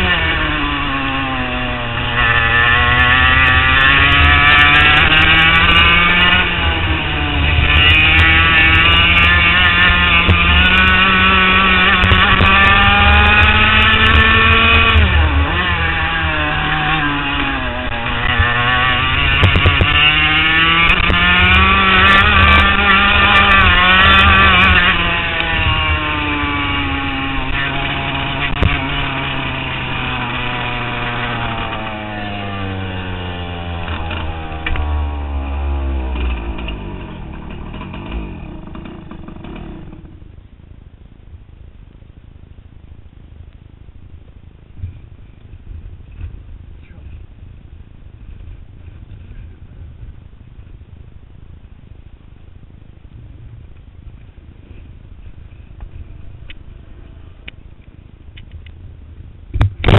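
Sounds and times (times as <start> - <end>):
kart engine at full throttle: 0.0 - 40.4, 59.5 - 59.9.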